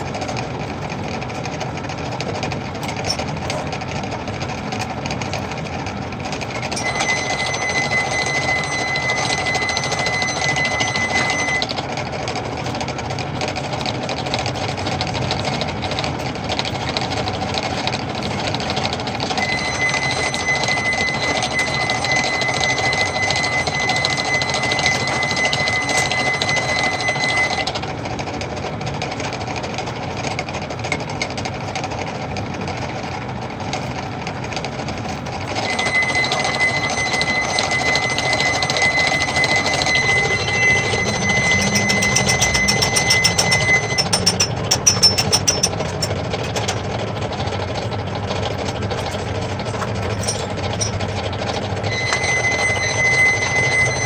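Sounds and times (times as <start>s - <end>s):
high steady whine: 4.7s - 12.9s, 18.7s - 29.9s, 35.0s - 54.0s
metal lathe clattering: 19.4s - 27.7s, 35.5s - 46.9s.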